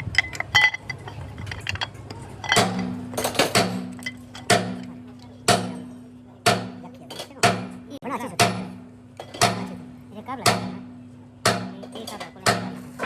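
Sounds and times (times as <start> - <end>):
metal parts clinking: 0.0 - 4.5.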